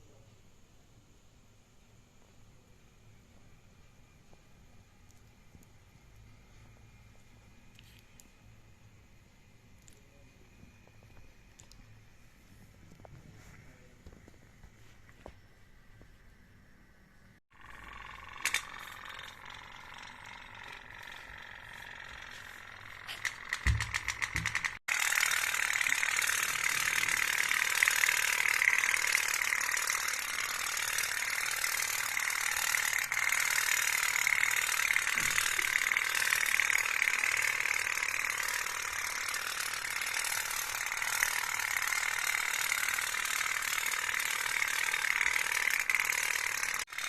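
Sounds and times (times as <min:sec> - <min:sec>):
toy steam boat metallic rattle: 0:17.6 - 0:47.0.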